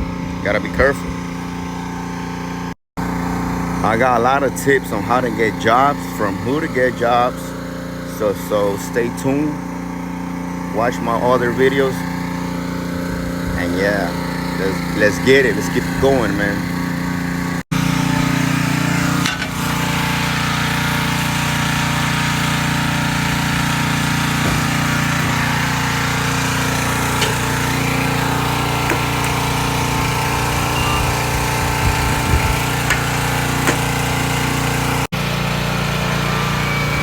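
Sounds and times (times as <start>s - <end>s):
pressure washer engine drone: 0.0s - 37.0s.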